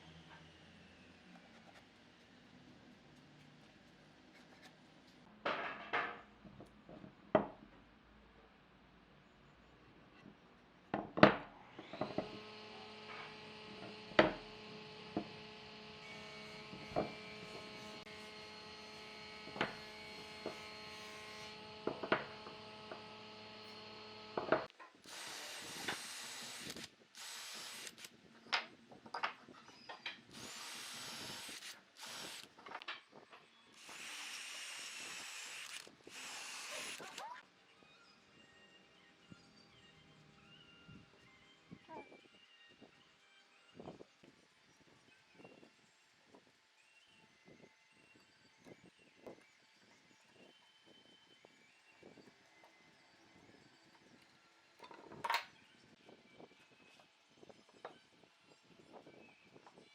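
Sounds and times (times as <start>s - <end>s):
power tool running: 11.6s - 28.1s, 30.3s - 32.5s, 33.8s - 37.4s.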